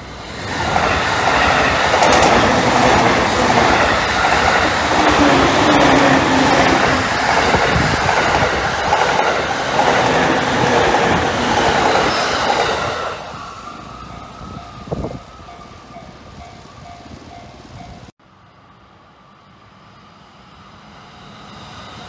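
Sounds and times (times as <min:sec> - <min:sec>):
train wheels clacking on rails: 0:00.0 - 0:13.4
crossing warning bell clanging: 0:14.0 - 0:18.1.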